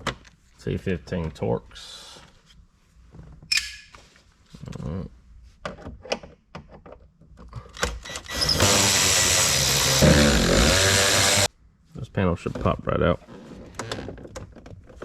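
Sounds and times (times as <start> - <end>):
cordless drill motor running: 8.1 - 11.5.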